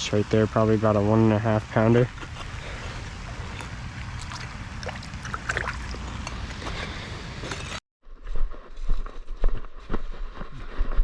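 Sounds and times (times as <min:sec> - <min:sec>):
rushing outdoor noise: 0:00.0 - 0:07.8.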